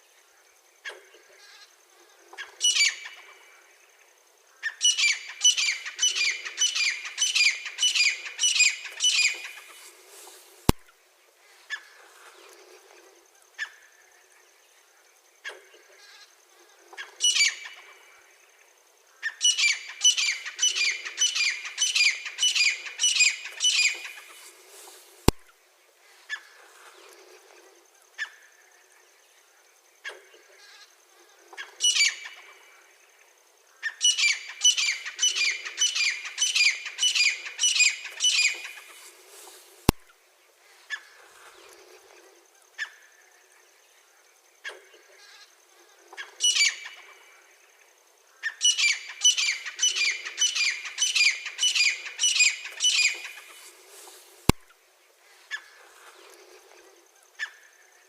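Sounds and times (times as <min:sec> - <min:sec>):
francolin calling: 0:02.3 - 0:03.6, 0:04.5 - 0:10.9, 0:17.0 - 0:18.1, 0:19.1 - 0:25.5, 0:31.5 - 0:32.8, 0:33.7 - 0:40.1, 0:46.0 - 0:47.7, 0:48.3 - 0:54.6.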